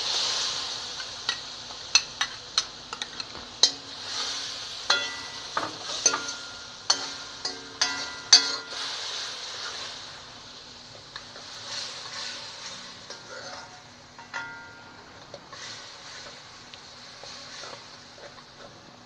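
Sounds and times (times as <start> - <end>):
paste sizzling in pan: 0.0 - 19.0
spoon clinking against pan: 4.9 - 8.8, 13.1 - 15.0.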